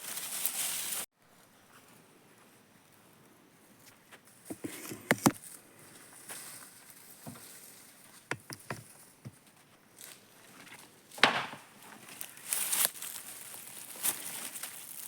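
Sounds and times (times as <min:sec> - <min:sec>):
sharp knocks and taps: 0:08.3 - 0:09.4.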